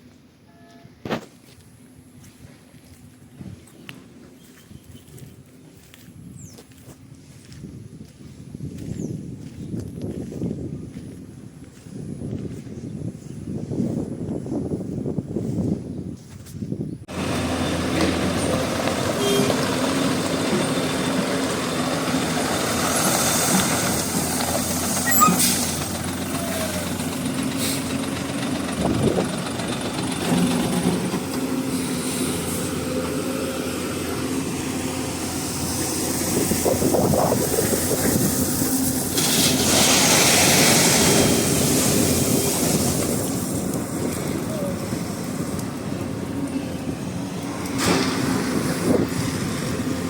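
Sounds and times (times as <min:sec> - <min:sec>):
excavator diesel engine running: 0:17.1 - 0:50.0.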